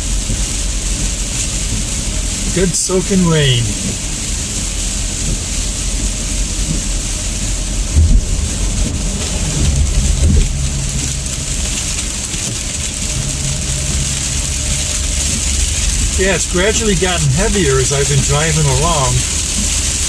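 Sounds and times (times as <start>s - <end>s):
car rumbling on wet road: 0.0s - 20.0s
heavy rain on car roof: 0.0s - 20.0s
low thumps: 6.6s - 19.8s.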